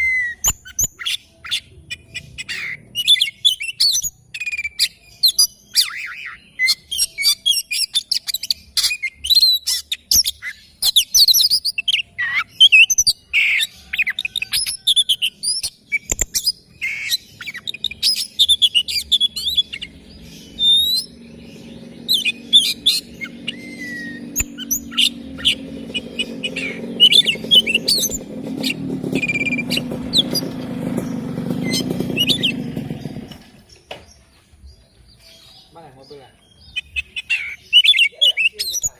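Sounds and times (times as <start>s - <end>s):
bird singing chirps and whistles: 0.0s - 33.9s, 35.2s - 38.9s.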